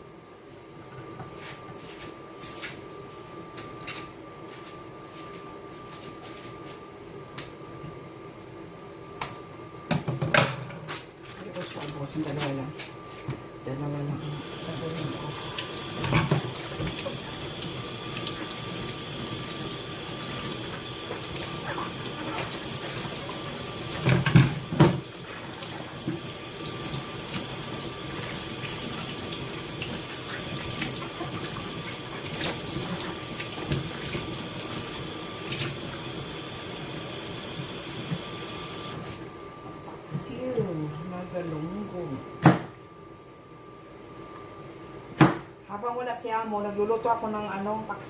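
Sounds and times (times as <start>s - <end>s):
tap water running into sink: 14.3s - 39.2s.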